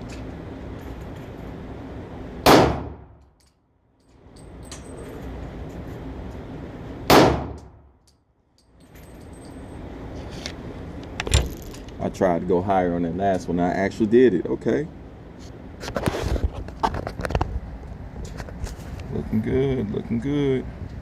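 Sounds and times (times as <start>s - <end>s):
steady background noise: 0.0s - 21.0s
gunshots: 2.4s - 3.1s, 7.1s - 7.6s.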